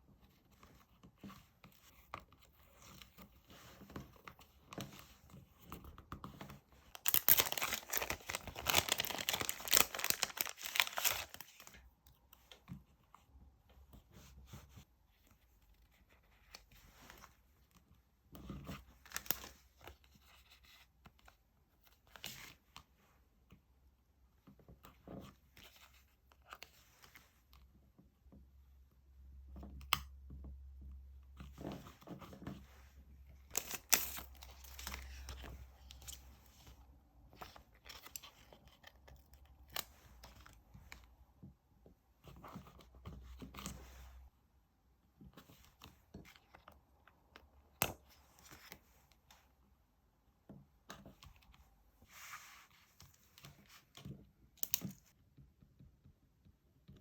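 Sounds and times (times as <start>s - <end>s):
paper rustling: 6.5s - 11.8s
paper crinkling and tearing: 6.9s - 11.8s.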